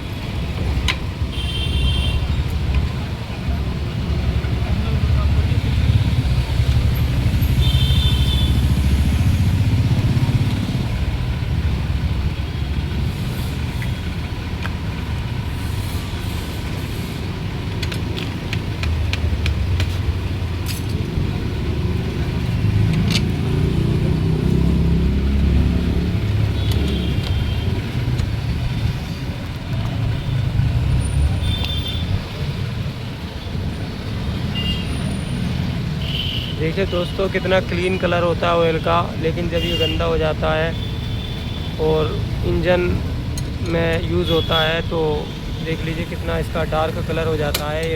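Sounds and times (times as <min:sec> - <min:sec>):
road traffic rumbling: 0:00.0 - 0:47.9.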